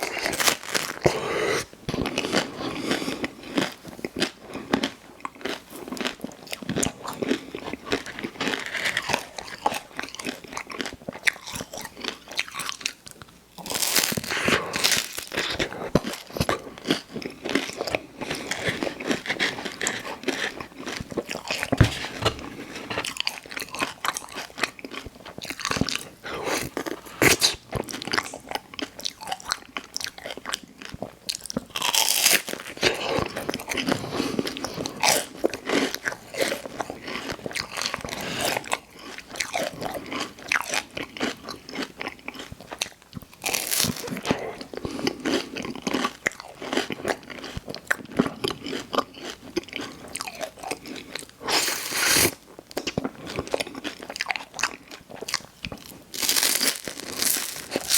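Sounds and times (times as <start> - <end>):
person chewing crunchy food: 0.0 - 57.9
loud crunching bites: 56.2 - 57.9.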